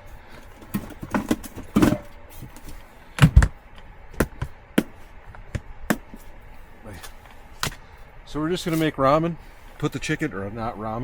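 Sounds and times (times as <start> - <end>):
objects knocking and tapping: 0.6 - 2.6.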